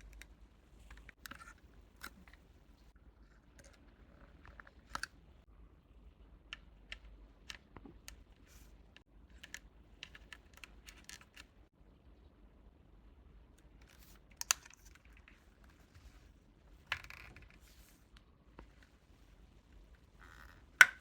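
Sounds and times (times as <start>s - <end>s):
small objects clicking and tapping: 20.2s - 21.0s.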